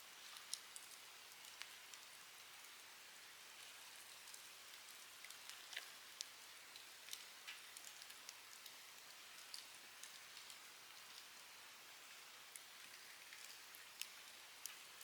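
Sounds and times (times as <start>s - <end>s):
light rain hissing: 0.0s - 15.0s
campfire crackling: 6.1s - 11.3s, 12.5s - 14.9s.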